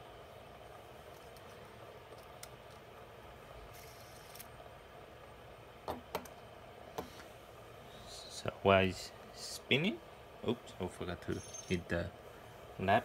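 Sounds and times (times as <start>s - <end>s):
fidget spinner whirring: 3.6s - 4.6s.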